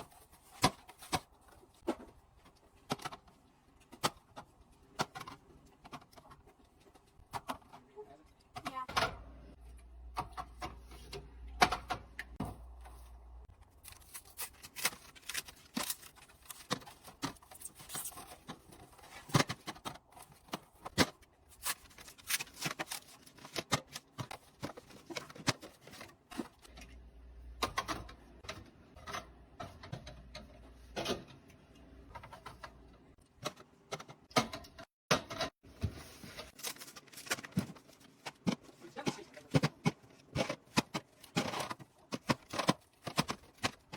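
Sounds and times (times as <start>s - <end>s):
groceries being handled: 12.2s - 34.3s, 35.6s - 43.9s.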